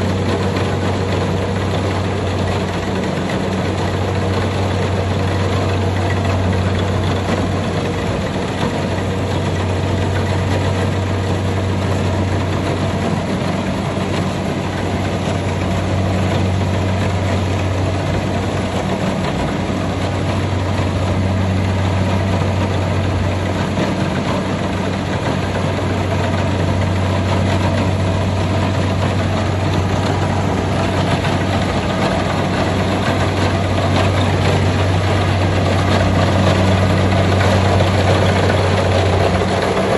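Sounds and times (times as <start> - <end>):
harvester engine drone: 0.0 - 39.9.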